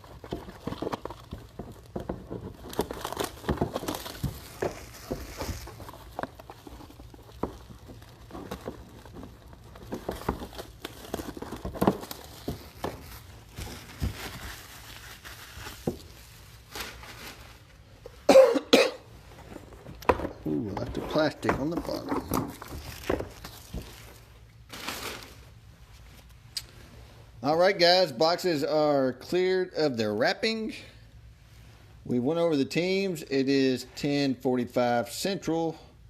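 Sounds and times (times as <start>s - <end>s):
plastic wrap crinkling and tearing: 0.0s - 18.2s, 20.5s - 26.4s.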